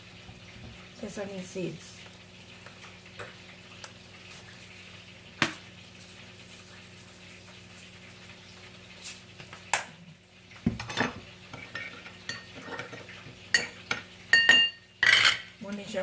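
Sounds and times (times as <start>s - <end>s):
spoon clinking against bowl: 11.7s - 15.5s.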